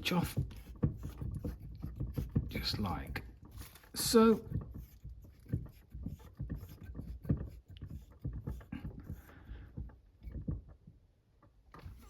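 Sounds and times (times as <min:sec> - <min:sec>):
knocks and rustling of handling: 0:00.0 - 0:12.0.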